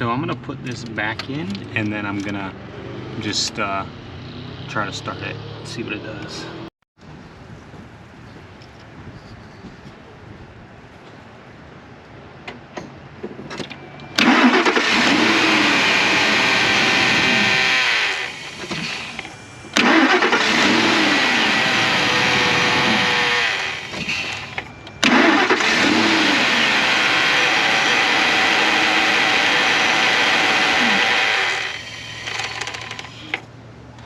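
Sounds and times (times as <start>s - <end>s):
truck engine cranking: 13.5s - 34.0s.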